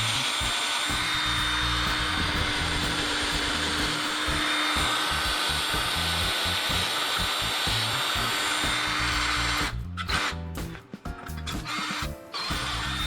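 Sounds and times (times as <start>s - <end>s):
power tool cutting metal: 0.0s - 10.3s
background music: 0.0s - 13.0s.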